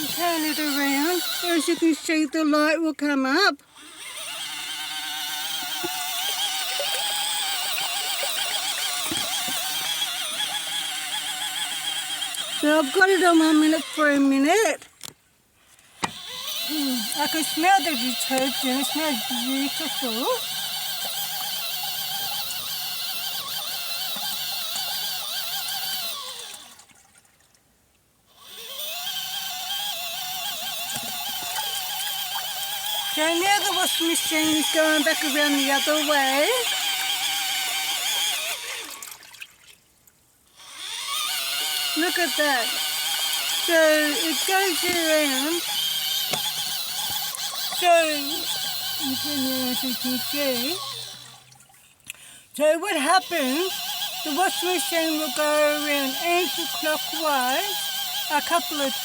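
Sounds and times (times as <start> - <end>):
water churning: 0.0 - 2.6, 3.7 - 15.0, 15.8 - 27.6, 28.4 - 59.0
washing machine motor whine: 0.0 - 14.8, 16.0 - 26.8, 28.4 - 39.3, 40.6 - 51.6, 52.6 - 59.0
water swishing: 30.6 - 52.1.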